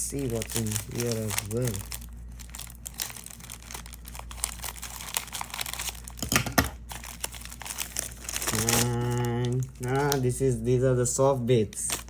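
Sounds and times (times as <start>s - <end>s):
packaging tearing: 0.0s - 10.5s, 11.4s - 12.0s
plastic packaging crinkling: 0.0s - 12.0s
man speaking: 8.5s - 12.0s.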